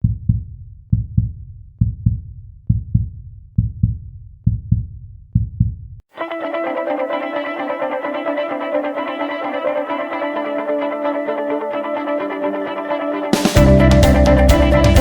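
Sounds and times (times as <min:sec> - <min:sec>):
heartbeat thumps: 0:00.0 - 0:06.0.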